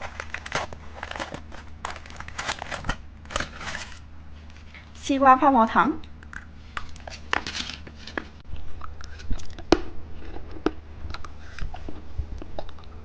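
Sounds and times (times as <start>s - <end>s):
plastic wrapper crinkling and tearing: 0.0s - 4.6s.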